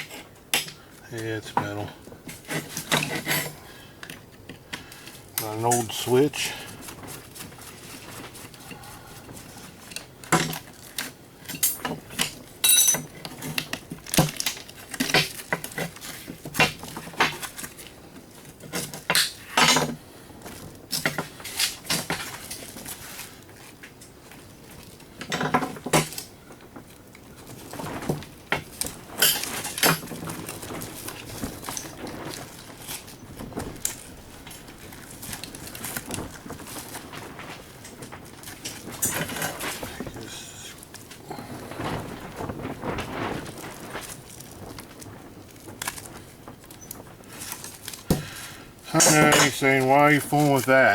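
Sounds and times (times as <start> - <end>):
clinks of small metal parts and tools: 11.4 - 13.2.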